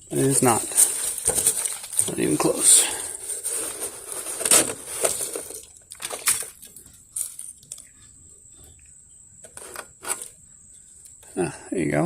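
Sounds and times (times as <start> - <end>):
scraping and rustling wet leaves: 0.1 - 7.8.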